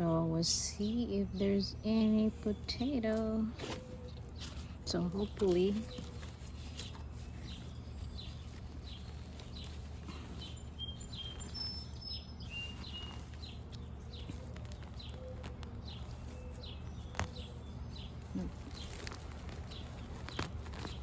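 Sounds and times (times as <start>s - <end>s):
birds chirping: 0.0s - 21.0s
steady low hum: 0.0s - 21.0s
bird whistled notes: 10.4s - 13.6s.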